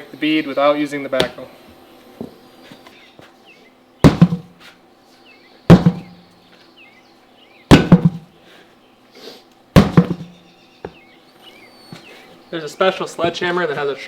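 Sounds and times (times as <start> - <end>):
sledgehammer striking tire: 4.0 - 4.6, 5.7 - 6.2, 7.7 - 8.3, 9.8 - 10.4.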